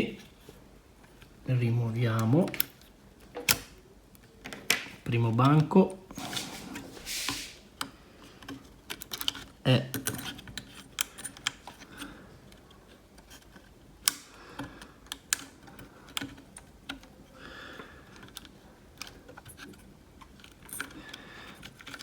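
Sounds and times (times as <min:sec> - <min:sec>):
short soft scrape: 0:06.2 - 0:07.7.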